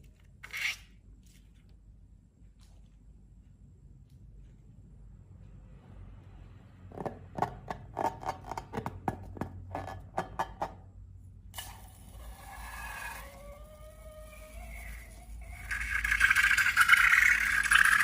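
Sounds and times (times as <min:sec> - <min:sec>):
rubbing hiss with squeaky tones: 0:12.2 - 0:17.7.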